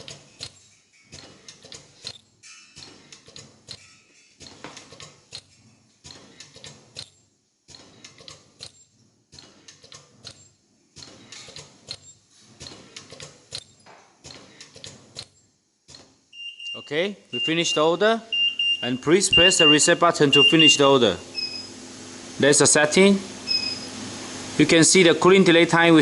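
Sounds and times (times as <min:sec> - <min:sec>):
welding machine clicking and clattering: 0:00.0 - 0:16.2.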